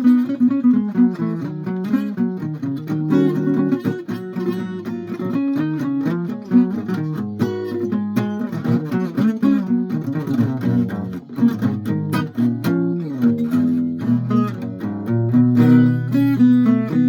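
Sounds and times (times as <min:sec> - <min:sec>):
plucked guitar notes: 0:00.0 - 0:17.0.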